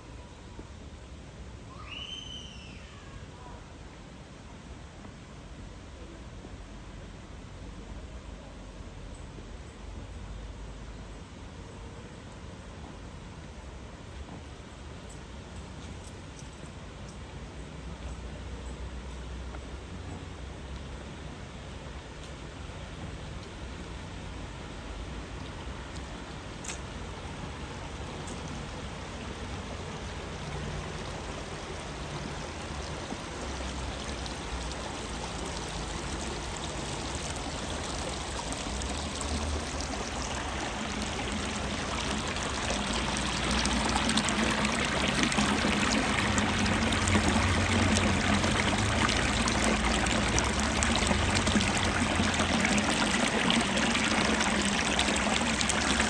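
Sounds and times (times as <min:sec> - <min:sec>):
stream water rushing: 0:24.0 - 0:56.0.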